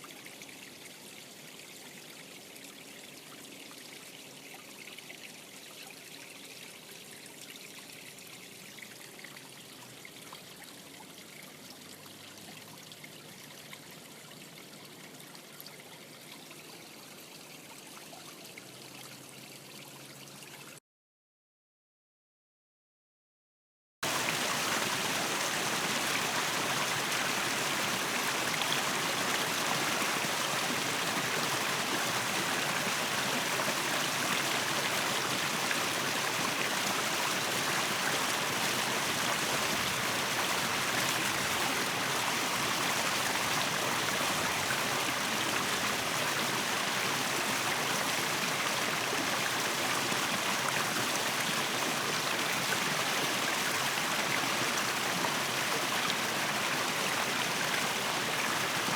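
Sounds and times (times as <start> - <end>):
stream flowing: 24.0 - 58.9.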